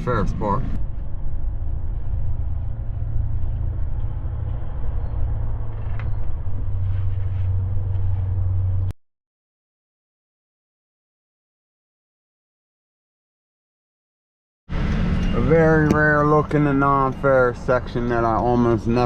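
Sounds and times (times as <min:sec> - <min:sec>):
truck engine rumbling: 0:00.0 - 0:08.9, 0:14.7 - 0:19.0.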